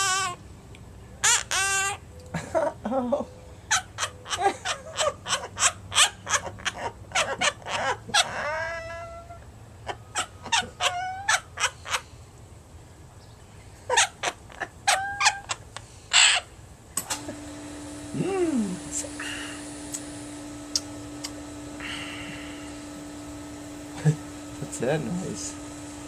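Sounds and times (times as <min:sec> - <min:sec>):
parrot squawking: 0:00.0 - 0:00.4, 0:01.2 - 0:02.0, 0:03.7 - 0:12.1, 0:13.9 - 0:16.5.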